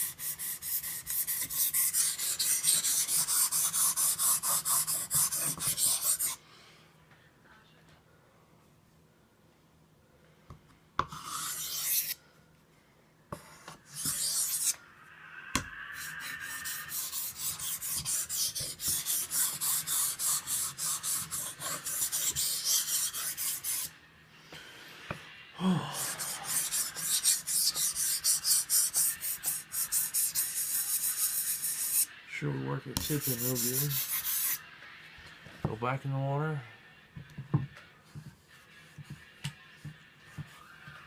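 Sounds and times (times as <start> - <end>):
knife rasping on whetstone: 0.0 - 6.4, 11.1 - 12.2, 13.9 - 14.8, 16.0 - 23.9, 26.0 - 32.0.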